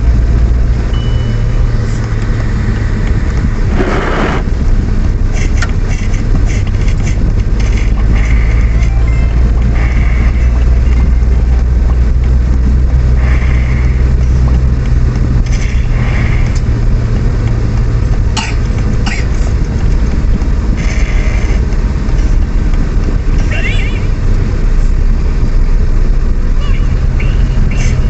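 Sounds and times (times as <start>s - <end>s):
moving vehicle rumble: 0.0s - 28.0s.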